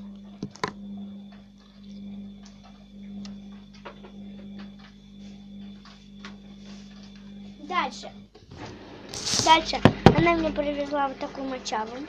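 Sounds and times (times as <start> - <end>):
steady low hum: 0.0 - 12.0
faint high tone: 7.4 - 8.3.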